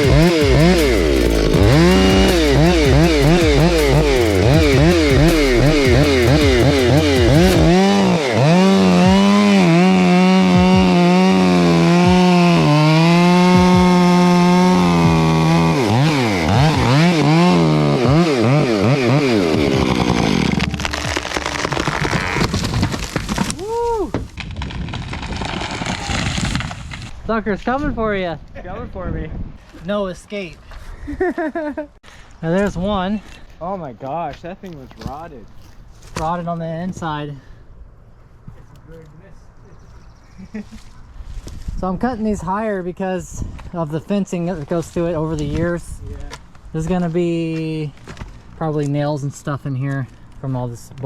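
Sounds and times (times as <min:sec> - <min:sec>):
background music: 0:00.0 - 0:22.4
chainsaw cutting into tree: 0:00.0 - 0:27.1.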